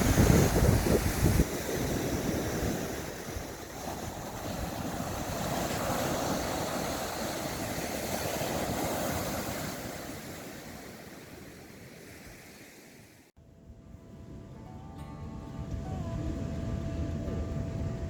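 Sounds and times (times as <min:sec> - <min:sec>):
sea waves washing onto beach: 0:00.0 - 0:13.3.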